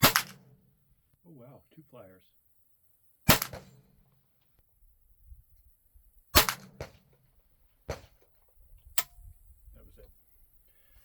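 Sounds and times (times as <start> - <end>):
rifle shots with echo: 0.0 - 0.6, 3.3 - 3.9, 6.4 - 7.1.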